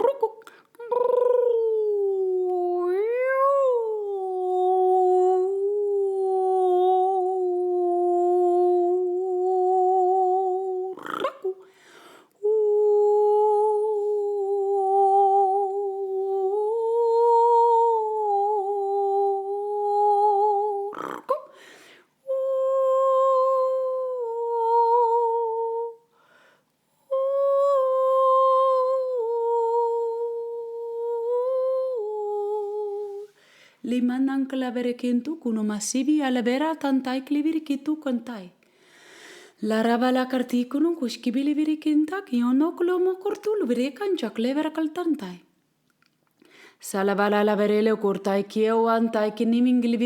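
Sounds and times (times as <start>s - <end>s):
woman humming: 0.0s - 11.6s, 12.4s - 21.5s, 22.3s - 26.0s.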